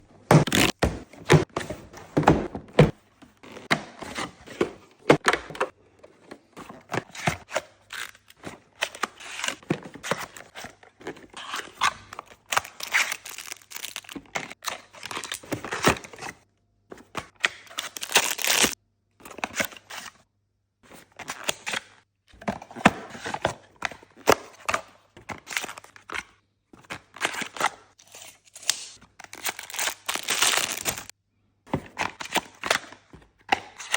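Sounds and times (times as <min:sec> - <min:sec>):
packaging crinkling: 0:12.6 - 0:16.2, 0:17.8 - 0:18.8, 0:28.0 - 0:31.1
cardboard tearing: 0:18.0 - 0:18.8, 0:28.0 - 0:31.1.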